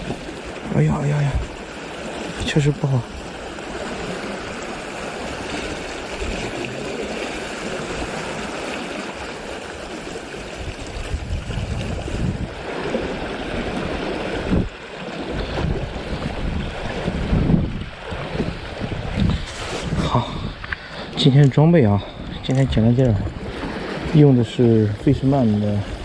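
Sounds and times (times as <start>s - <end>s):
sea waves: 0.0s - 26.0s
wind gusting on microphone: 10.5s - 26.0s.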